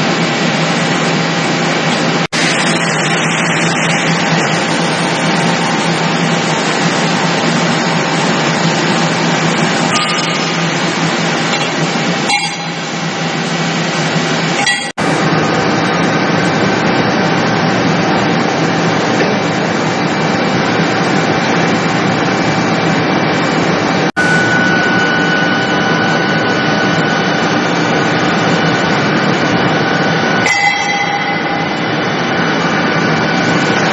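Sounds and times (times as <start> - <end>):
loud machinery noise: 0.0 - 33.9.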